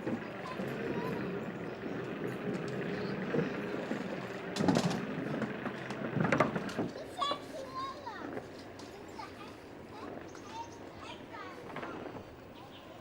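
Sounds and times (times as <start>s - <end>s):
electric skateboard rolling: 0.0s - 13.0s
skateboard knocks: 4.6s - 7.0s.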